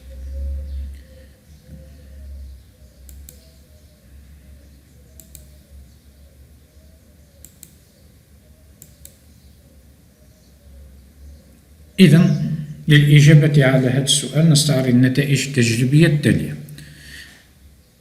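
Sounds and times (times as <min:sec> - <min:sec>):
faint low hum: 0:00.0 - 0:18.0
sharp double clicks: 0:05.2 - 0:05.5, 0:07.4 - 0:07.8.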